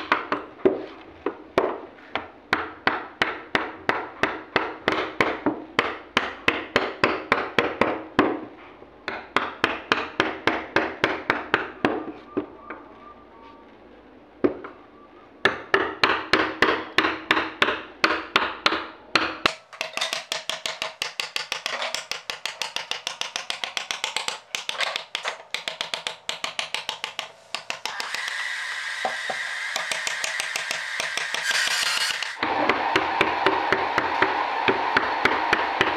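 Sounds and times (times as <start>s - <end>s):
mallet tapping chisel into wood: 15.4s - 28.4s, 29.0s - 31.6s.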